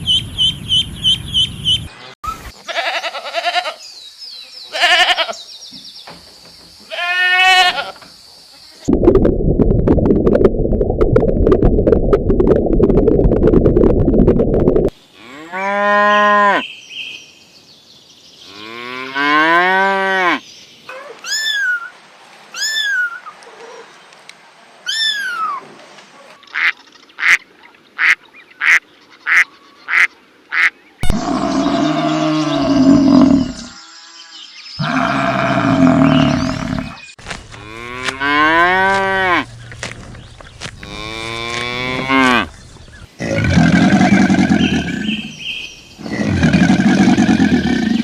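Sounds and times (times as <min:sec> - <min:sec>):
farm animal calls: 0:43.2 - 0:48.0.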